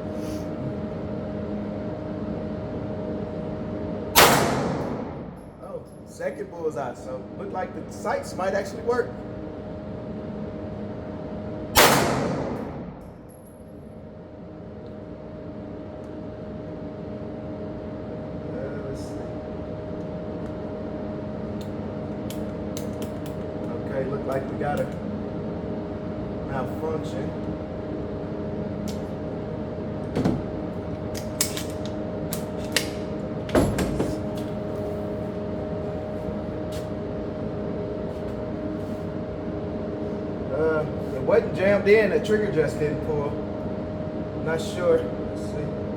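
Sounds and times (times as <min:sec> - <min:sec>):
steady hum: 0:00.0 - 0:45.9
pistol gunshot with echo: 0:04.2 - 0:05.4, 0:11.8 - 0:13.0.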